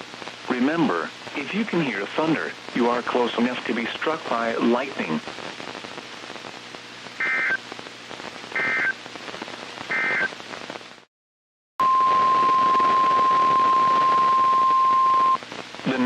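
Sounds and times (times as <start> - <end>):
radio static: 0.0 - 11.1, 11.8 - 16.0
data bursts: 7.2 - 7.6, 8.6 - 9.0, 9.9 - 10.3.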